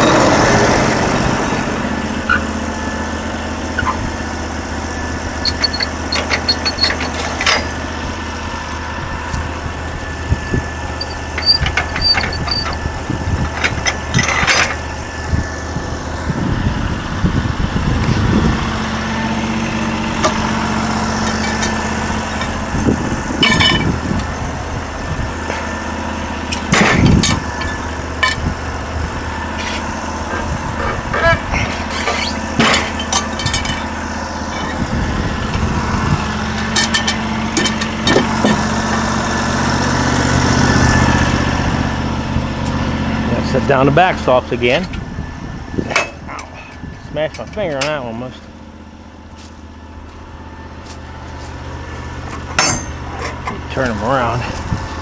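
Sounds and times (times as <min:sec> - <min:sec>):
sawmill engine idling: 0:00.0 - 0:55.0
knocks and clunks of logs: 0:36.8 - 0:39.0.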